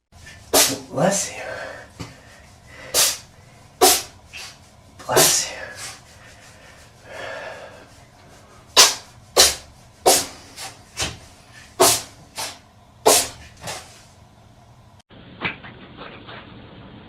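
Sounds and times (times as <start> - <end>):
cat sneezing: 0.5 - 0.9, 2.9 - 6.0, 8.8 - 10.7, 11.8 - 13.9.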